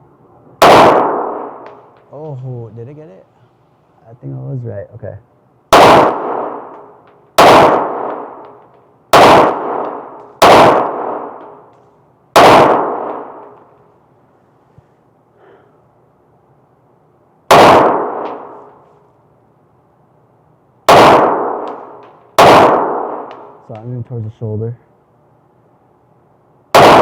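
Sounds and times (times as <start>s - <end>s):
handgun shots with echo: 0.6s - 1.9s, 5.8s - 11.6s, 12.4s - 13.7s, 17.5s - 18.8s, 20.9s - 23.6s, 26.8s - 27.0s.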